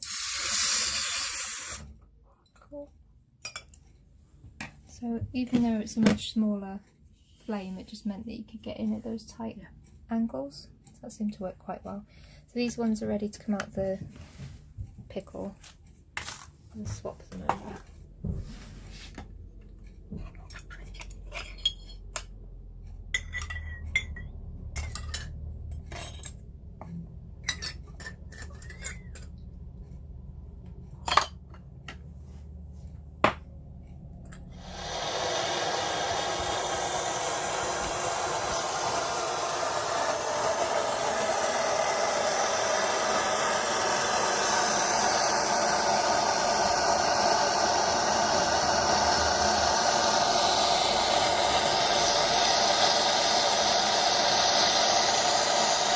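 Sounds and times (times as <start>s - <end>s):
gas torch hissing: 0.0s - 1.9s, 34.5s - 55.9s.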